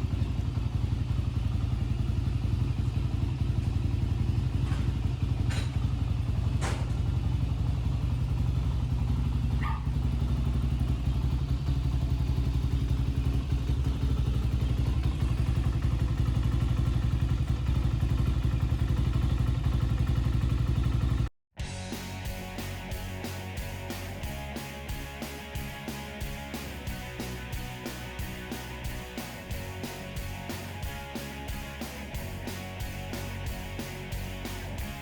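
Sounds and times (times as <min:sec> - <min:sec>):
engine idling: 0:00.0 - 0:35.0
guitar music: 0:21.6 - 0:35.0.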